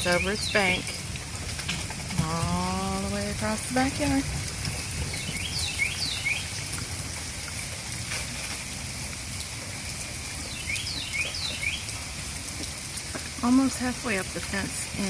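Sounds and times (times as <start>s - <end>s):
bird chirping: 0.0s - 1.0s, 4.7s - 6.7s, 10.4s - 11.9s
rain falling: 0.0s - 15.0s.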